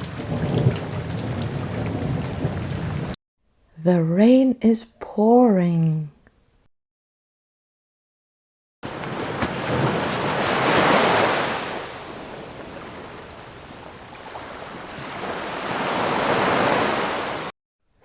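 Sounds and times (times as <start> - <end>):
ocean waves crashing on shore: 8.8 - 17.5.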